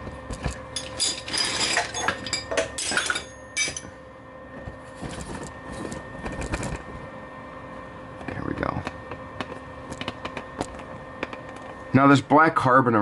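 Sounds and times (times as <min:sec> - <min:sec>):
small metal pieces clinking: 0:00.8 - 0:03.8.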